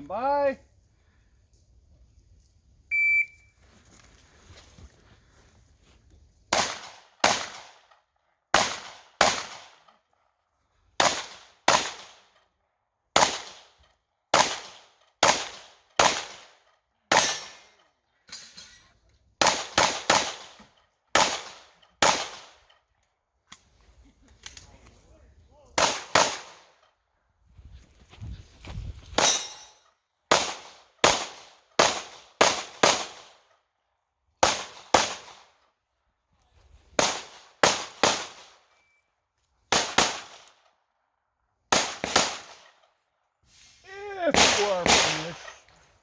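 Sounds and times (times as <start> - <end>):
shot timer beep: 2.9 - 3.5
pistol shots: 6.5 - 7.8, 8.5 - 9.8, 11.0 - 12.2, 14.3 - 16.5, 19.4 - 22.5, 25.8 - 26.7, 39.7 - 40.4, 41.7 - 42.6, 44.3 - 45.6.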